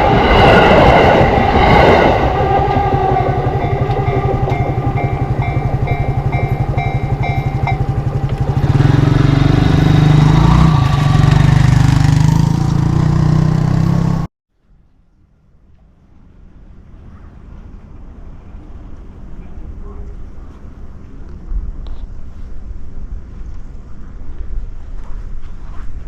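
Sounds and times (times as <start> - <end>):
train wheels clacking on rails: 0.0 - 14.0
level crossing warning bell: 1.6 - 11.8.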